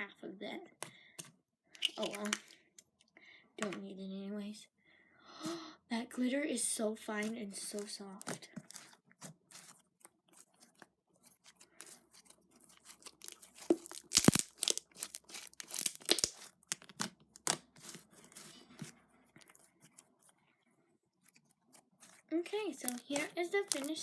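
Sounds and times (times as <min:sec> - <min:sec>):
slime sticky clicks and pops: 0:13.2 - 0:17.6, 0:22.8 - 0:23.9.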